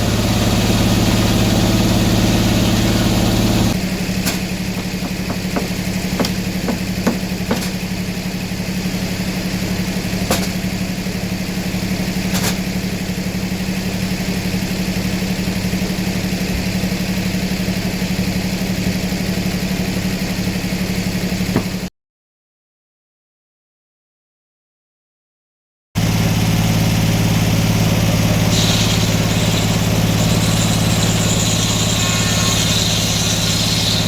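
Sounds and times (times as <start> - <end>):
sawmill engine idling: 0.0 - 21.9, 26.0 - 34.0
sharp knocks: 4.2 - 7.8, 10.3 - 10.6, 21.6 - 21.9.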